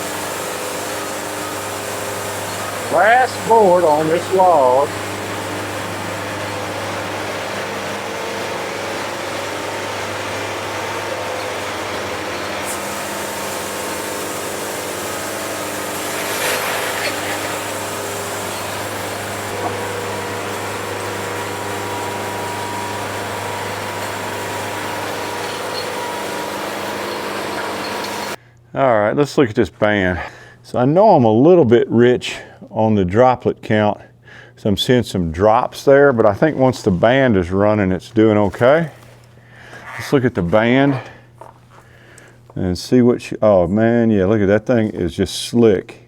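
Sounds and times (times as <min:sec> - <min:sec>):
bright hiss: 0:00.0 - 0:06.9
band sawmill sawing log: 0:00.0 - 0:28.4, 0:38.0 - 0:39.3.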